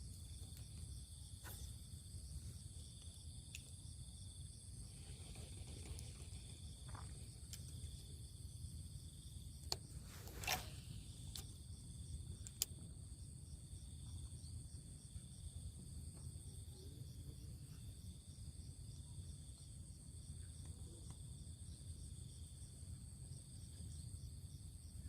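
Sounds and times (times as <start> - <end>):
insects chirring: 0.0 - 25.0.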